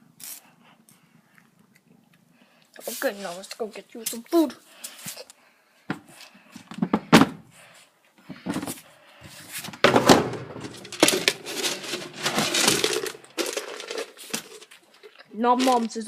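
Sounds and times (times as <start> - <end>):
rustling: 8.4 - 16.0
clatter of things handled: 9.5 - 16.0.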